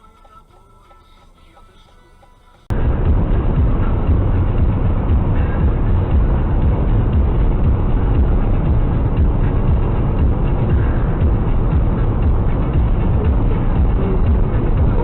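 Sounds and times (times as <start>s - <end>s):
vehicle engine and road noise: 0.0s - 15.0s.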